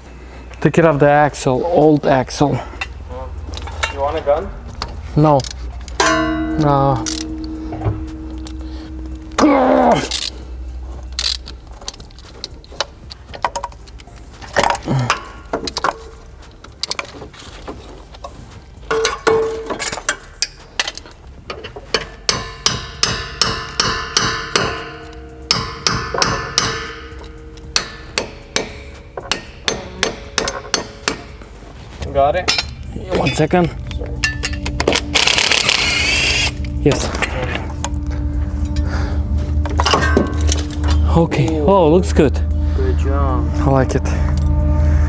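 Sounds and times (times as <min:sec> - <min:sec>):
hammer blows on steel: 0:06.0 - 0:10.6.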